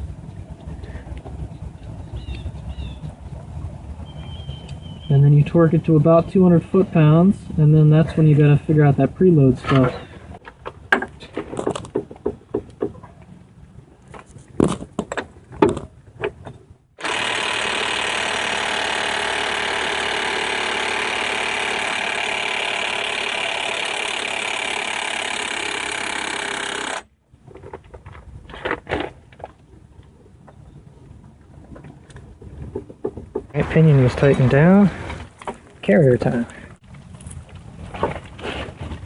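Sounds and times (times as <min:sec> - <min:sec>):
clanking tools: 0:16.4 - 0:27.1
impact wrench rattling: 0:17.0 - 0:27.1.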